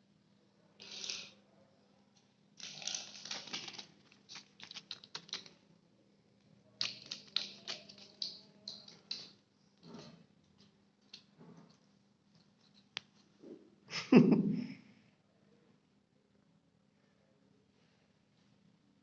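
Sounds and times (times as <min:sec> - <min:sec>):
kitten scratching and clattering: 0:02.6 - 0:05.6, 0:06.8 - 0:11.8.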